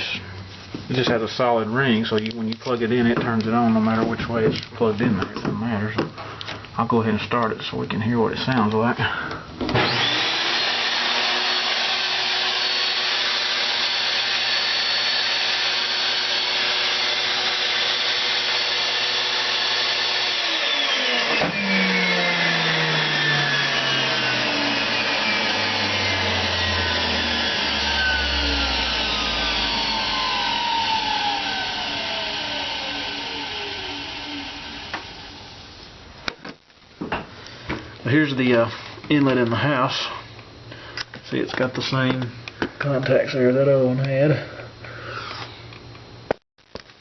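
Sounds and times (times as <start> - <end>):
vacuum motor whining: 9.6 - 35.7.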